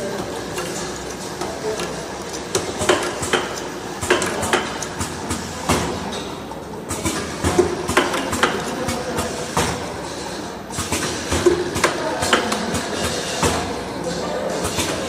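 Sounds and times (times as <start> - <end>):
sharp clicks and clattering knocks: 0.0 - 9.8.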